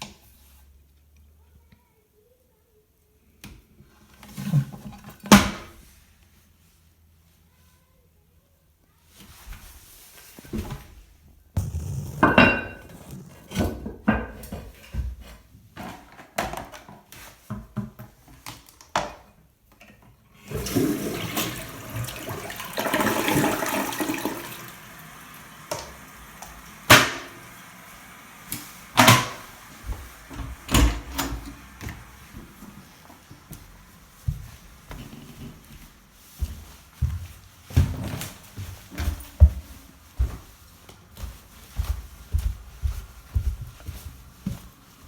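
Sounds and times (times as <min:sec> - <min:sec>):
water hissing: 0:11.6 - 0:13.5, 0:20.5 - 0:33.9
toilet flushing: 0:11.6 - 0:14.0, 0:20.3 - 0:34.3.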